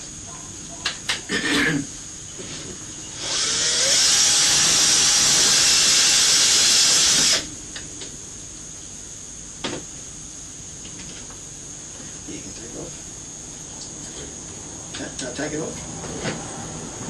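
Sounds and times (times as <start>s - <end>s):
power tool hissing: 3.1s - 7.5s.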